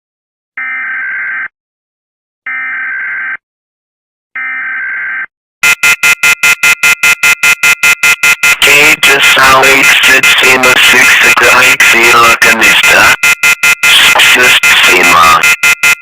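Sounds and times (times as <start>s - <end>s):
electronic data bursts: 5.6s - 16.0s
rapid pulsing alert beeps: 5.6s - 16.0s.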